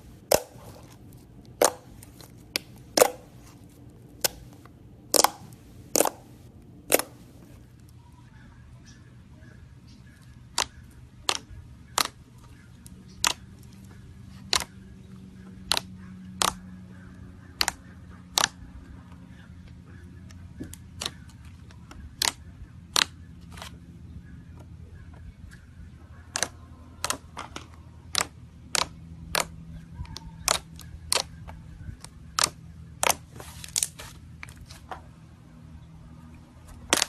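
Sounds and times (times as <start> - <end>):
slime clicking pops: 4.2 - 7.3, 26.4 - 27.2, 28.1 - 29.5.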